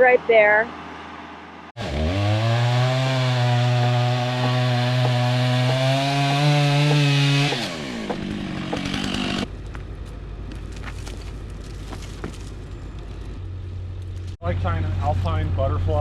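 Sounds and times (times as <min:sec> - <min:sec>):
chainsaw cutting: 0:01.8 - 0:09.5.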